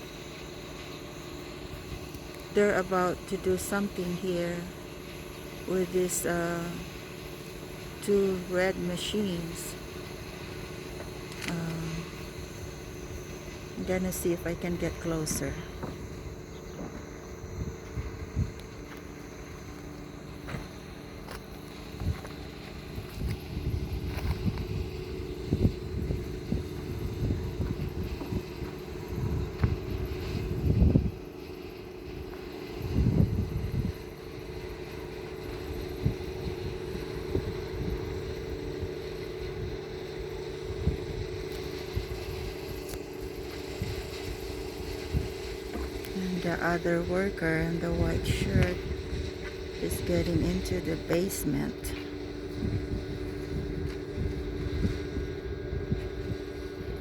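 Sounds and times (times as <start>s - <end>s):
machine engine humming: 0.0s - 57.0s
wind rumbling on microphone: 11.5s - 19.0s, 20.3s - 31.4s, 32.1s - 57.0s.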